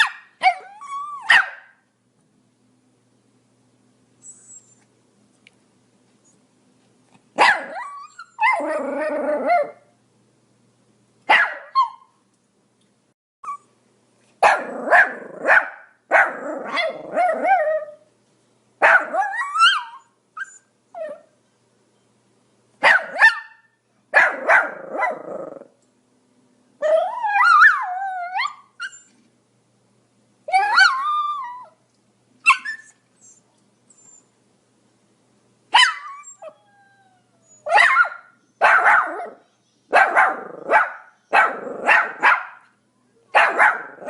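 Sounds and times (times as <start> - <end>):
dog whining yelp: 0.0 - 1.7, 4.2 - 4.9, 7.4 - 9.8, 11.3 - 12.2, 13.4 - 13.7, 14.6 - 18.0, 18.8 - 21.3, 26.8 - 29.2, 30.5 - 31.8, 32.4 - 34.3, 35.8 - 42.5
small dog barking: 0.0 - 1.8, 7.4 - 8.8, 11.3 - 12.1, 14.4 - 17.9, 18.8 - 20.0, 22.8 - 25.6, 35.7 - 36.2, 37.6 - 44.0.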